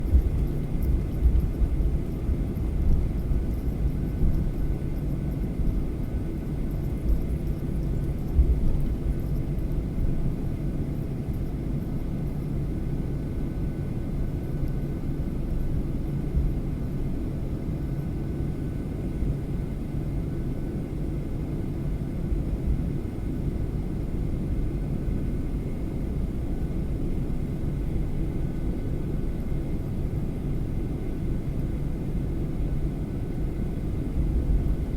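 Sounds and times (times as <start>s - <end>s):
faint whine tones: 0.0s - 10.3s
airliner engines rumbling: 0.0s - 19.9s.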